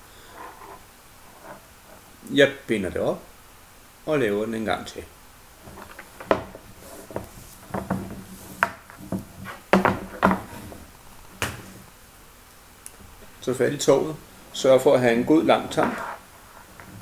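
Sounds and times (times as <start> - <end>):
rope knocking against wood: 5.6 - 11.7
rope rustling and swishing: 5.6 - 11.9.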